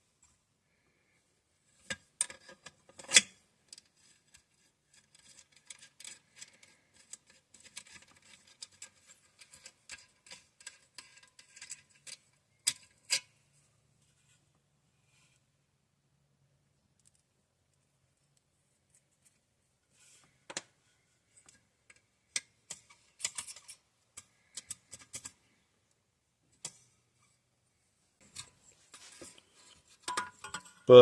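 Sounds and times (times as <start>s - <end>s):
light ticks and scrapes: 1.8s - 13.3s, 18.9s - 25.6s, 28.2s - 30.9s
metal tools clicking and tapping: 5.0s - 13.3s, 21.4s - 25.4s, 30.0s - 30.9s.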